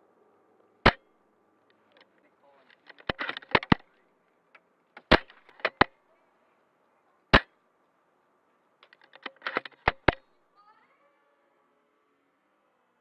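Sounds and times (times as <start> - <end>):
airsoft guns firing: 5.0 - 5.9.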